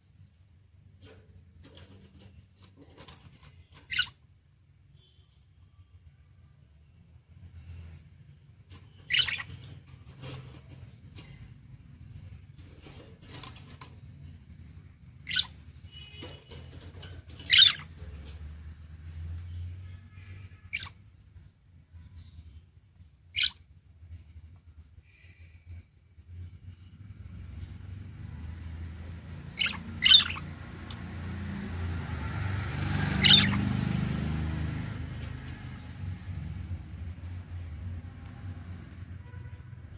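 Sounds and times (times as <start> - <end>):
budgerigars chirping: 3.8 - 4.2, 8.8 - 10.4, 15.2 - 18.2, 20.7 - 21.0, 23.3 - 23.6, 29.4 - 31.1, 33.2 - 33.7
budgerigars chattering: 3.9 - 4.1, 9.0 - 9.6, 15.3 - 15.6, 17.4 - 17.9, 29.5 - 30.6, 33.2 - 33.6
budgerigars squawking: 3.9 - 4.2, 9.0 - 9.7, 15.3 - 15.6, 17.4 - 17.9, 29.5 - 31.0, 33.2 - 33.7
budgerigar warble: 9.1 - 9.5, 29.6 - 30.4.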